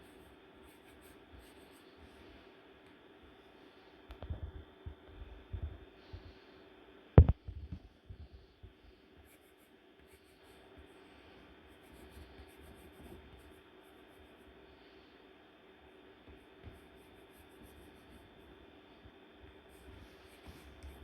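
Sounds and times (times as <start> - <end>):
pencil scratching on paper: 0.0 - 2.2, 9.2 - 14.5, 16.3 - 18.6, 19.5 - 21.0.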